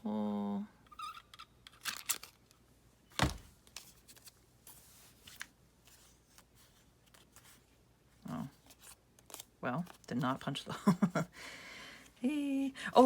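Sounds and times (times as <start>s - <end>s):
paper rustling: 3.2s - 7.7s
faint paper shuffling: 3.2s - 10.7s.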